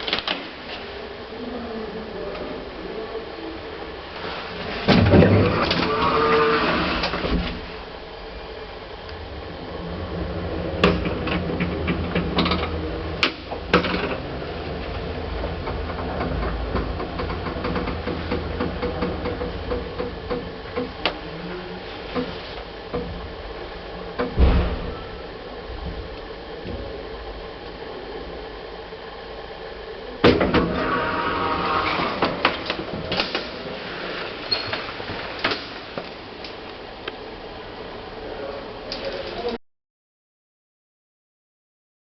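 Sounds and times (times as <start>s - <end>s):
elevator machinery hum: 0.0s - 39.6s
sharp clicks and knocks: 15.5s - 21.2s
heavy elevator thump: 24.2s - 27.1s.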